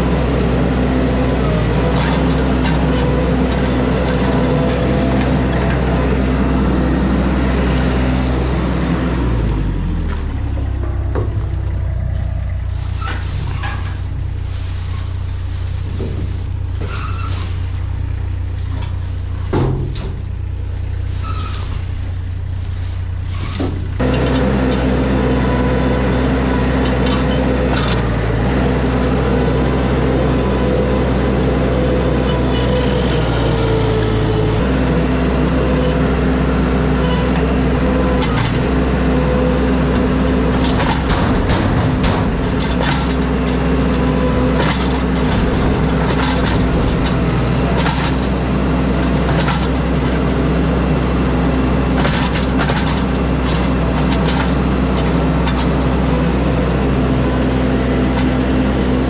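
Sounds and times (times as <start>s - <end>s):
heavy equipment engine running: 0.0s - 59.0s
branches cracking and snapping: 10.0s - 24.0s.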